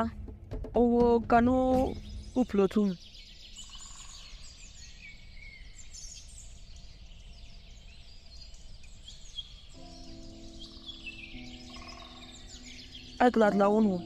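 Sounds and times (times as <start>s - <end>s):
small birds chirping: 0.8s - 14.0s.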